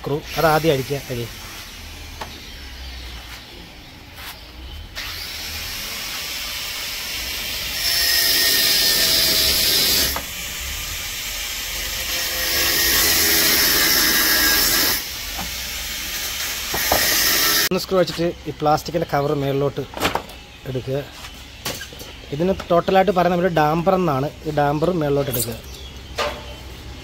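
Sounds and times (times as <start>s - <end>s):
electric screwdriver running: 5.0s - 10.4s, 16.3s - 17.7s.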